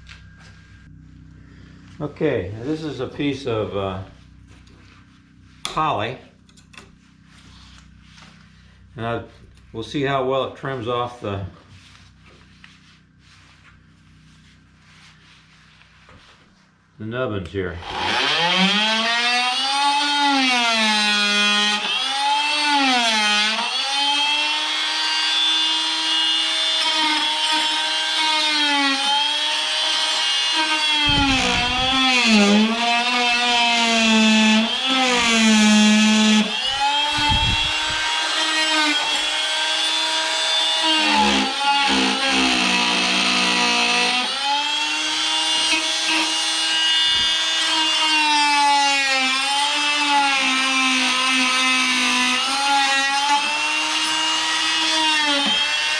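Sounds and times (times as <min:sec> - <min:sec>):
multi-tool cutting wood: 0:17.8 - 0:55.9.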